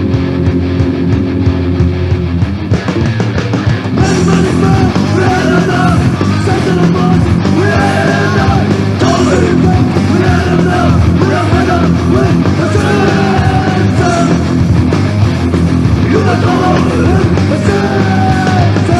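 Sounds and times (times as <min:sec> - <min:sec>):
punk band playing fast: 0:00.0 - 0:18.9
shouted vocals: 0:04.0 - 0:14.5, 0:16.0 - 0:18.9.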